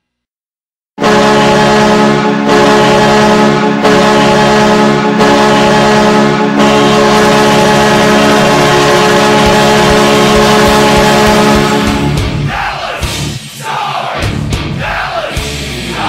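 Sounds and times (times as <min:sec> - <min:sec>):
arena goal horn blasts: 0:01.0 - 0:12.1.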